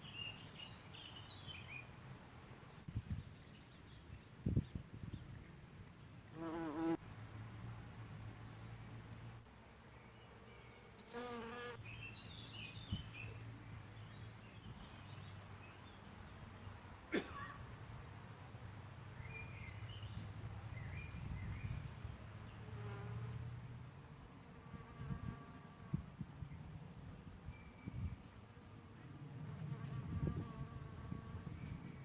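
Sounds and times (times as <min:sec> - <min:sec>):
bee buzzing in flight: 0:06.4 - 0:07.0, 0:11.0 - 0:11.8, 0:29.4 - 0:31.6.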